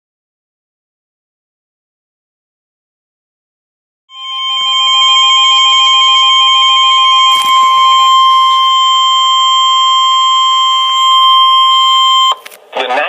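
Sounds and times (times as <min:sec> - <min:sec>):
fast pulsing beep: 0:04.1 - 0:12.4
steady high alert tone: 0:04.1 - 0:12.4.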